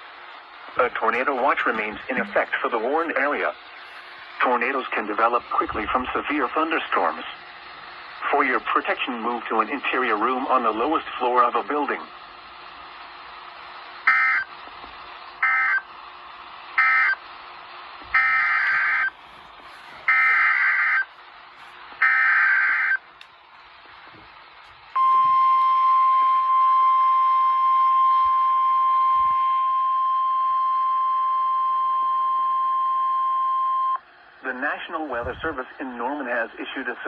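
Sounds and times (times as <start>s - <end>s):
weather radio alarm tone: 0.8s - 7.3s, 14.0s - 14.5s, 15.4s - 15.9s, 16.8s - 17.2s, 18.0s - 19.2s, 19.8s - 21.2s, 22.0s - 23.1s, 25.0s - 36.2s
screeching data bursts: 18.2s - 19.2s, 20.0s - 21.1s.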